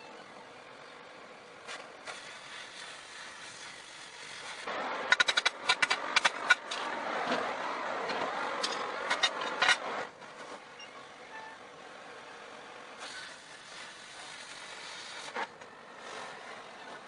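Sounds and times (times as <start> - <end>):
welding arc crackling: 1.6 - 7.0, 13.0 - 16.8.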